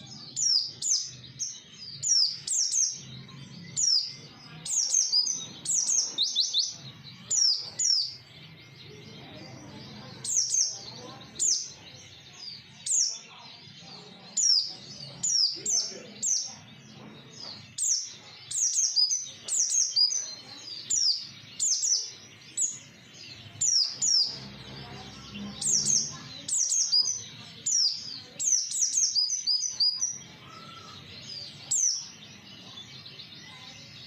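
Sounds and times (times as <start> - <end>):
bird chirping rapidly: 17.8 - 24.7.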